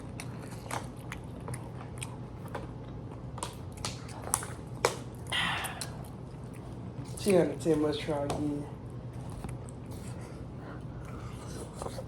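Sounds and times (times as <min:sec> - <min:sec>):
person chewing and biting food: 0:00.0 - 0:07.4.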